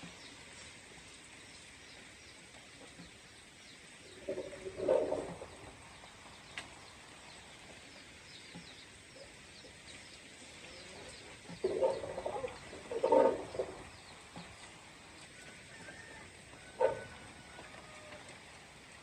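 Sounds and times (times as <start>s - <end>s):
animal calls: 4.2s - 5.6s, 10.8s - 14.5s, 16.0s - 18.3s.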